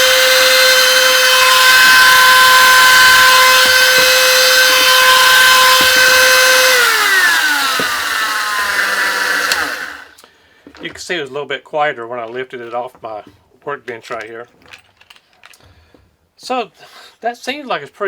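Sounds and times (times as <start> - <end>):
rotary tool whining: 0.0 - 10.2.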